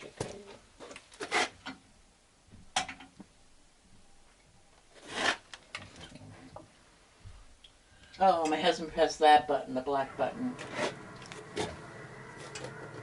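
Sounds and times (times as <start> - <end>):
rubbing and scraping handling noises: 0.0 - 1.8, 4.9 - 6.6.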